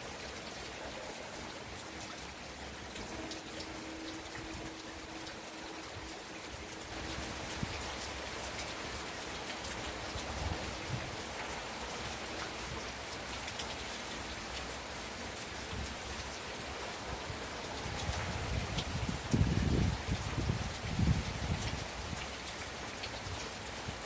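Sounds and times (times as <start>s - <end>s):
gentle rain hissing: 0.0s - 24.0s.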